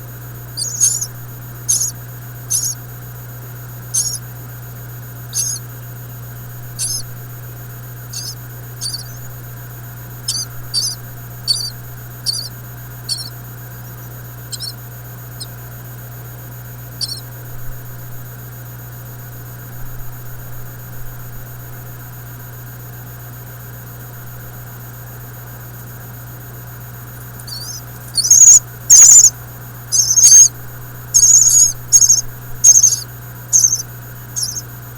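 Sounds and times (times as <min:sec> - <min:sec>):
steady low hum: 0:00.0 - 0:22.2, 0:24.0 - 0:34.9
nestling birds begging calls: 0:00.6 - 0:02.8, 0:03.9 - 0:04.2, 0:05.3 - 0:05.8, 0:06.7 - 0:07.2, 0:08.1 - 0:09.4, 0:10.2 - 0:13.4, 0:14.5 - 0:14.8, 0:17.0 - 0:17.2, 0:27.4 - 0:29.3, 0:29.9 - 0:30.5, 0:31.2 - 0:34.7.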